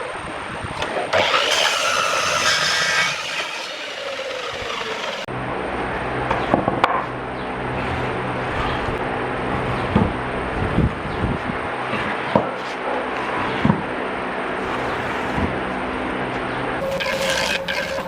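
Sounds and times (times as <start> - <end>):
low machine hum: 0.0 - 18.0
power tool cutting wood: 0.8 - 5.3, 16.8 - 18.0.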